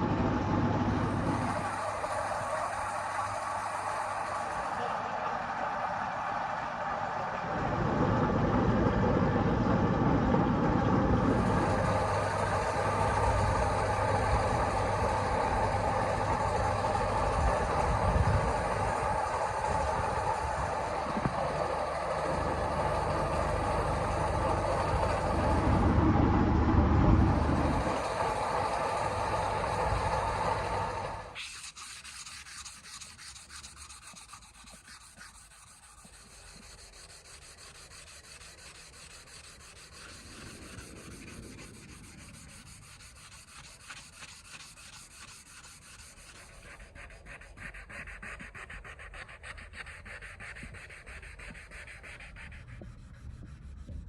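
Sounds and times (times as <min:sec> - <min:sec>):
workshop machine rumbling: 0:00.0 - 0:31.4
rubbing on knife blade: 0:31.4 - 0:54.0.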